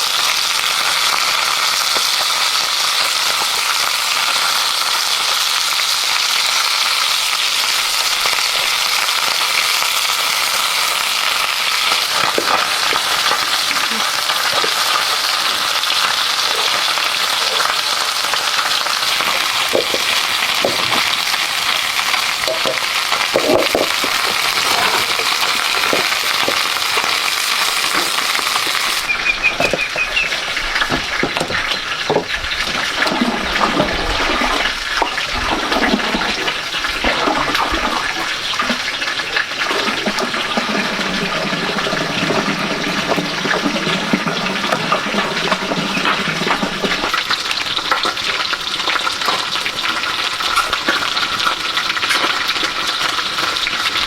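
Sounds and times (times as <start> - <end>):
food sizzling in hot oil: 0.0 - 54.0
running water splashing: 7.7 - 54.0
small knocks: 29.5 - 32.8.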